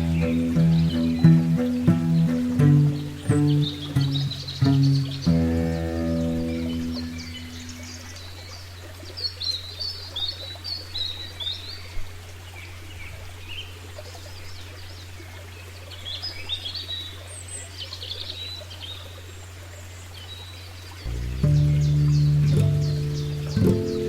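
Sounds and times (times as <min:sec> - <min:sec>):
music with held notes: 0:00.0 - 0:08.1, 0:21.1 - 0:24.0
steady low hum: 0:00.0 - 0:08.2, 0:21.1 - 0:24.0
songbirds chirping: 0:00.0 - 0:24.0.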